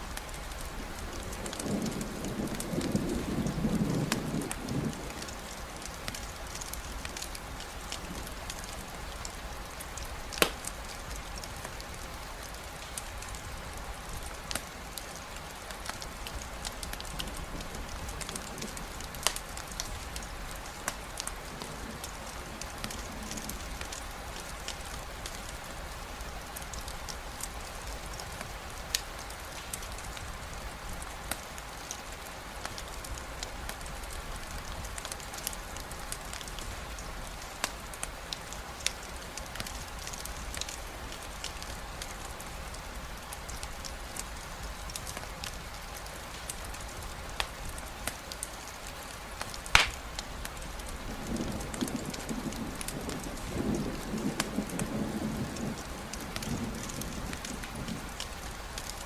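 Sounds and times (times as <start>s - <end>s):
campfire crackling: 0.0s - 59.0s
steady rainfall: 0.0s - 59.0s.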